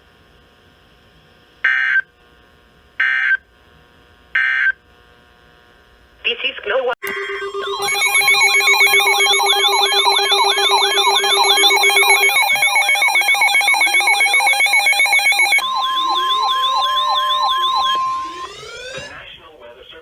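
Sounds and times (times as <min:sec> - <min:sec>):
electronic siren wails: 0:07.0 - 0:19.2
steady alarm tone: 0:07.0 - 0:19.2
steady beeping tones: 0:07.0 - 0:19.2.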